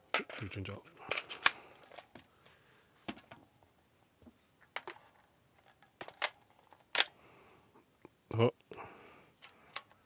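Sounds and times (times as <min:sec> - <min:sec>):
gun handling clicks and knocks: 0:00.1 - 0:03.5, 0:04.6 - 0:07.2.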